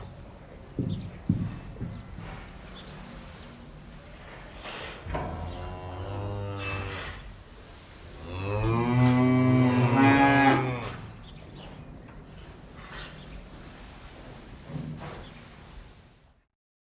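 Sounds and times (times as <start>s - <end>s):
cow mooing: 5.1s - 7.2s, 8.2s - 11.2s.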